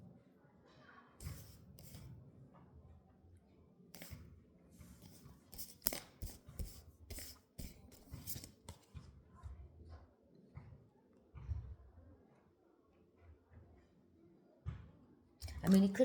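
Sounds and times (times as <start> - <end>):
cards rustling and clicking: 1.2 - 2.0, 4.0 - 4.2, 5.0 - 8.9.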